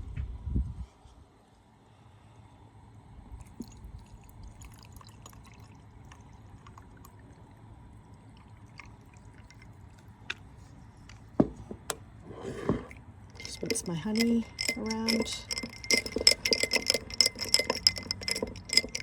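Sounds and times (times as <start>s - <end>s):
tea pouring into a glass: 3.4s - 7.6s, 8.2s - 10.0s
ice crackling and clinking: 12.4s - 19.0s.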